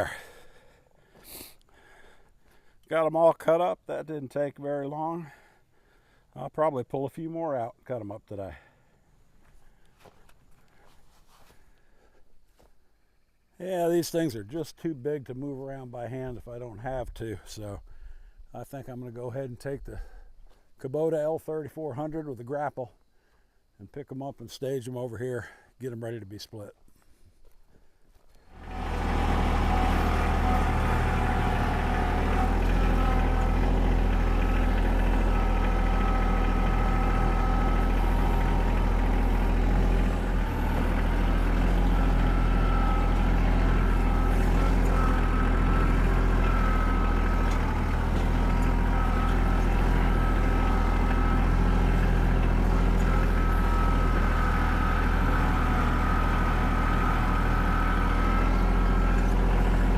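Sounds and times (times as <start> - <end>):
tractor diesel engine running: 0.0 - 3.7, 28.1 - 59.9.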